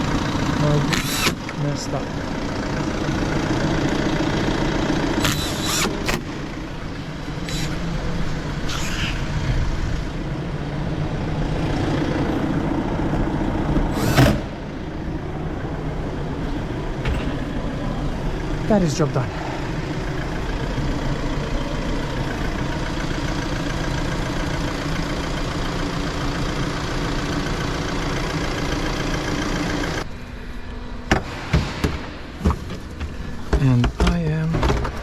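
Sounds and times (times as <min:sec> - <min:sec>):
car engine idling: 0:00.0 - 0:35.0.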